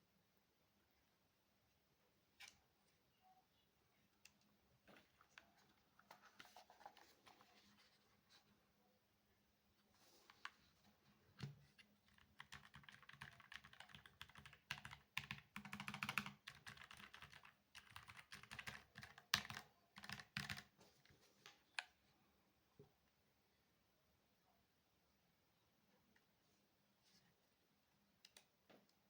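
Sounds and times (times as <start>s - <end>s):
mechanical keyboard typing: 12.1s - 20.7s.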